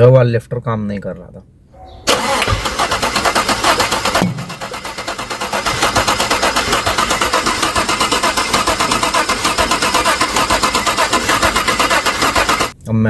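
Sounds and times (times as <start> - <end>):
engine running with pulsing beat: 3.2 - 12.7.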